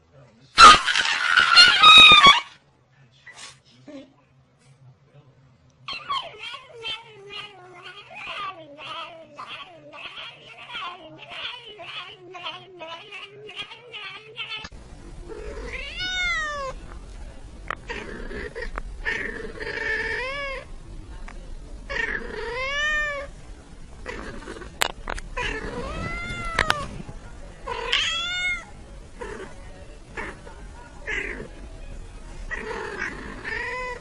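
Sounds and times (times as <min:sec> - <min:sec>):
cat meowing: 0:15.7 - 0:16.8, 0:22.1 - 0:23.3, 0:25.4 - 0:26.9, 0:27.7 - 0:28.7.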